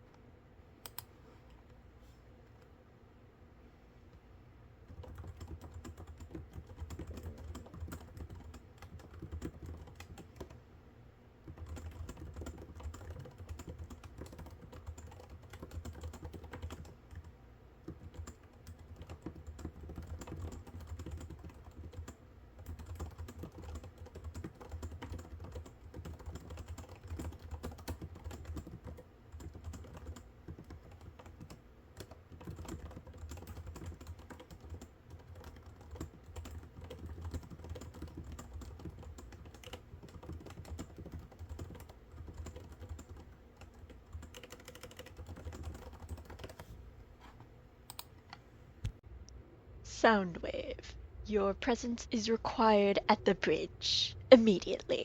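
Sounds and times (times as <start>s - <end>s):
low steady hum: 0.0s - 55.0s
fast typing on keyboard: 4.9s - 10.6s, 11.4s - 46.7s, 47.9s - 48.2s.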